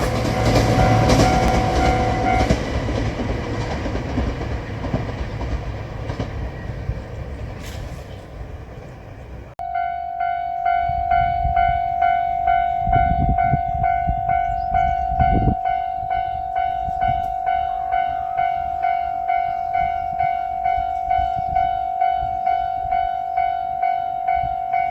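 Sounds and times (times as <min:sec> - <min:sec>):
level crossing alarm ringing: 0:00.0 - 0:03.7, 0:09.6 - 0:24.9
train rumbling past: 0:00.0 - 0:24.9.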